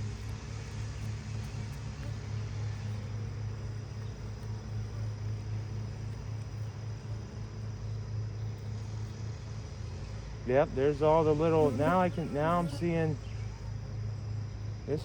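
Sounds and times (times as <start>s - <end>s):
honeybees buzzing: 0.0s - 15.0s.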